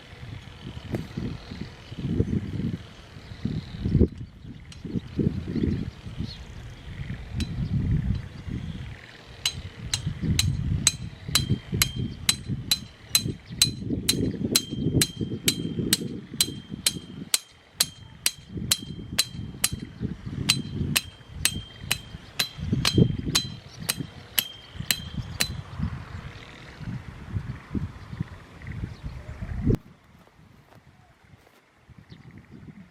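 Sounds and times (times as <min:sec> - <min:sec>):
hammer blows on metal: 0:09.4 - 0:25.8.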